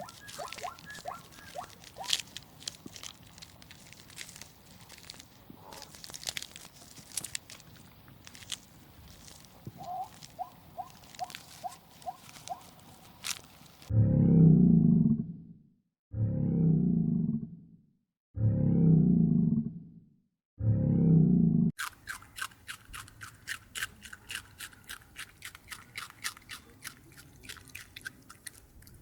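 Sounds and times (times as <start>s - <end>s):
small animal squeaking: 0.0s - 2.6s, 9.1s - 13.4s
crisp clicks and crunching: 0.0s - 13.9s, 21.8s - 29.0s.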